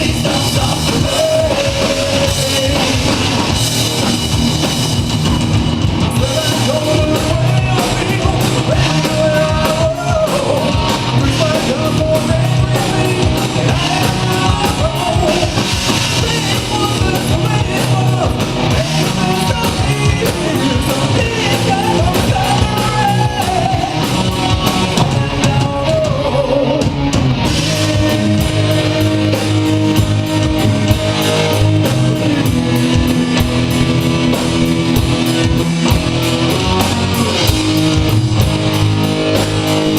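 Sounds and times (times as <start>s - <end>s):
person singing: 0.0s - 3.5s, 6.1s - 32.7s
rock band playing: 0.0s - 39.9s.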